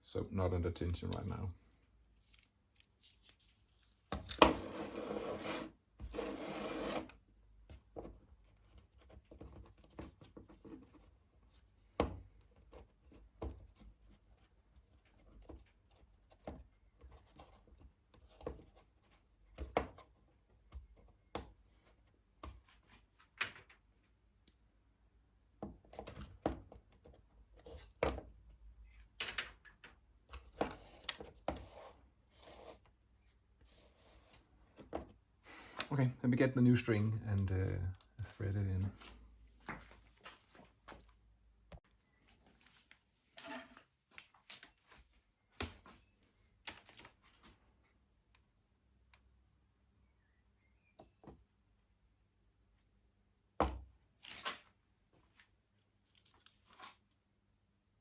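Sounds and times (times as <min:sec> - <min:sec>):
rubbing scraping of parts: 0:04.5 - 0:07.1.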